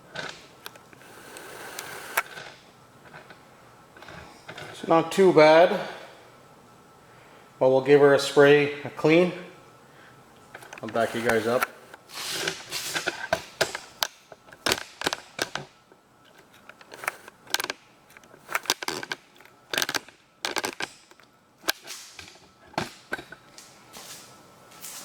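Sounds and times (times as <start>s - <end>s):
hard objects clicking and knocking: 12.4s - 23.5s.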